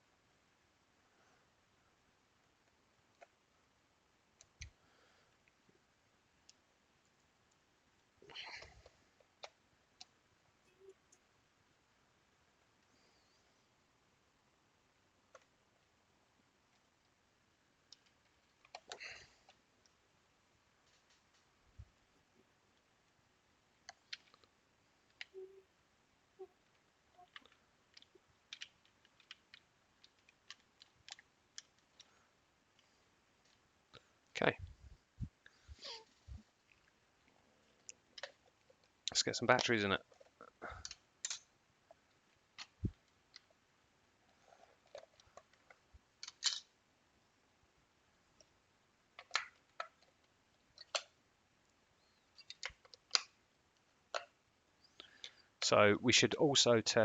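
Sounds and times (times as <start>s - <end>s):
plastic parts clicking: 26.7s - 32.1s, 39.6s - 43.5s, 44.6s - 46.7s, 49.2s - 51.2s, 52.4s - 53.3s.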